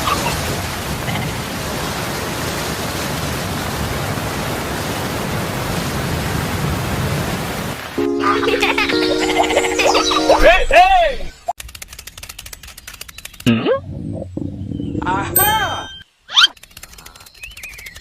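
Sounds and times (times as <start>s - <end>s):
held musical tones: 8.0s - 11.4s.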